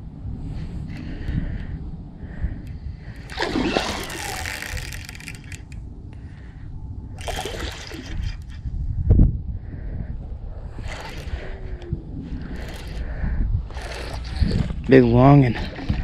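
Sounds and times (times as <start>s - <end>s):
wind rumble on microphone: 0.0s - 16.0s
fish splashing in water: 3.3s - 5.6s.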